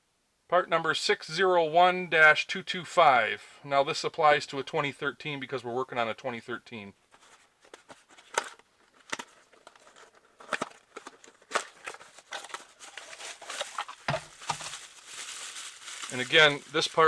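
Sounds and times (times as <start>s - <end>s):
plastic packaging crinkling: 7.2s - 17.0s.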